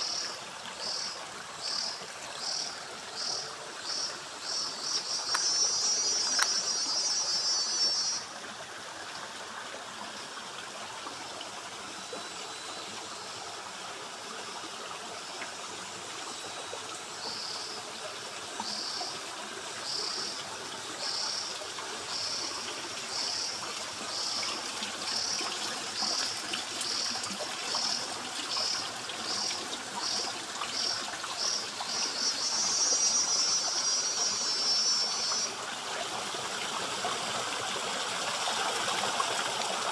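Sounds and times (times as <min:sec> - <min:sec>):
stream trickling: 0:00.0 - 0:39.9
cicada singing: 0:28.6 - 0:35.6.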